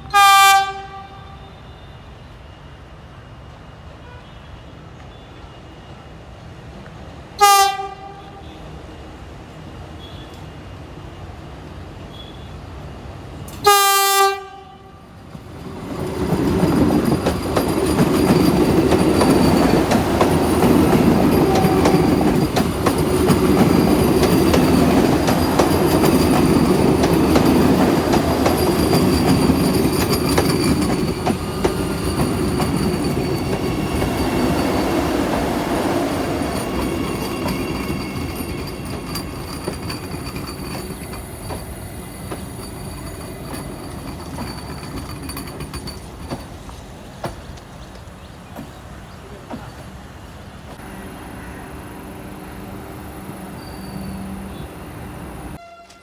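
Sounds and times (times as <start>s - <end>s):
train horn blast: 0.0s - 2.2s, 4.0s - 4.7s, 7.4s - 8.7s, 13.6s - 15.1s, 21.4s - 22.1s, 55.6s - 56.0s
faint high squeal: 1.3s - 6.1s, 12.0s - 12.7s, 50.8s - 56.0s
train wheels clattering: 15.4s - 55.6s.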